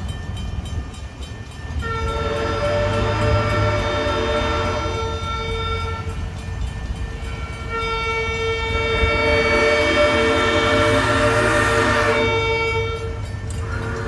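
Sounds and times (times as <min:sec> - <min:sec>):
low locomotive rumble: 0:00.0 - 0:14.0
locomotive horn blasts: 0:01.8 - 0:06.2, 0:07.3 - 0:14.0.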